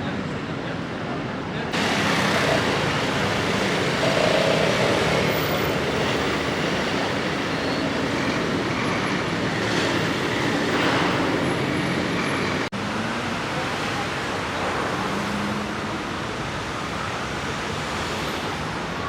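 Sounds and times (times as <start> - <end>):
city street traffic: 0.0 - 19.0.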